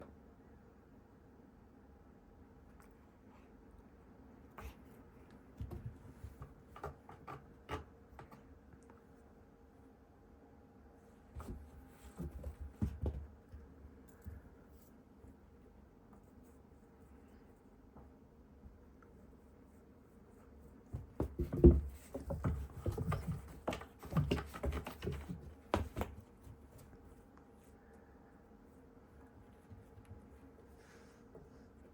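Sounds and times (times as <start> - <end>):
cat pouncing thumps and scratches: 5.5 - 8.4, 11.3 - 13.7, 20.9 - 27.0.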